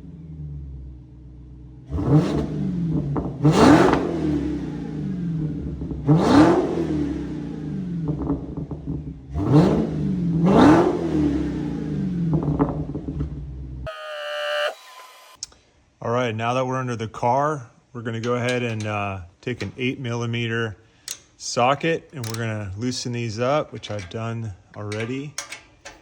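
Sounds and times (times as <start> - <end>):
car engine idling and revving: 0.0 - 13.9.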